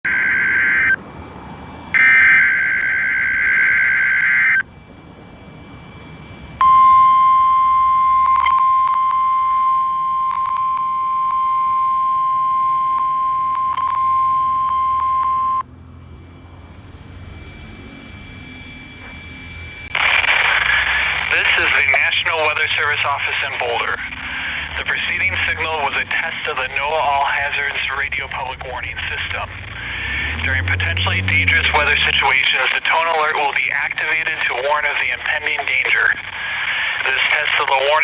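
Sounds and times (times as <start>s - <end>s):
steady alarm tone: 0.1s - 37.4s
radio hiss: 19.9s - 38.0s.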